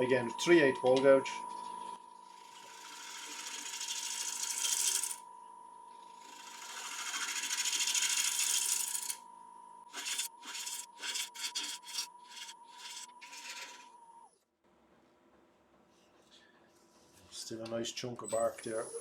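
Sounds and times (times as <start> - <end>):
wood lathe whine: 0.0 - 9.3, 9.9 - 14.3
gouge cutting wood: 2.2 - 5.2, 6.1 - 9.2, 9.9 - 13.9.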